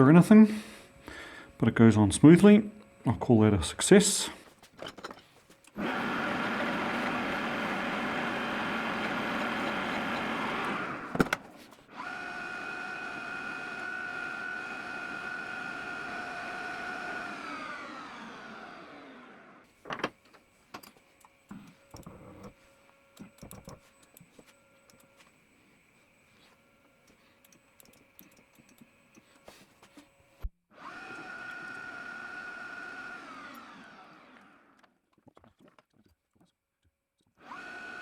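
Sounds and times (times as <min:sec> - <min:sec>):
machine tool motor running: 0:04.8 - 0:34.8, 0:37.4 - 0:38.0
motor whine spinning down: 0:05.8 - 0:19.6.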